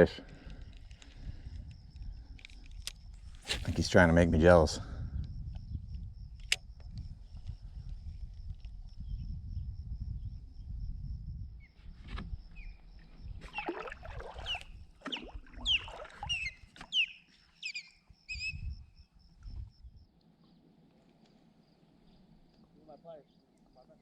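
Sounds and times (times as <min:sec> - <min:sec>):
osprey calling: 0:13.5 - 0:18.6.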